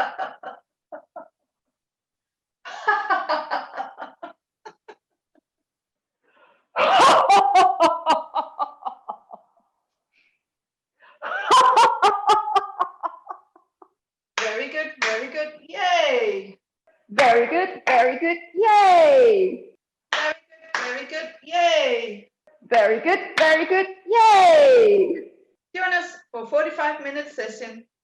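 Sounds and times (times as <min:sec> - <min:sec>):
person laughing: 0:00.0 - 0:01.5, 0:02.7 - 0:05.6, 0:06.8 - 0:09.5.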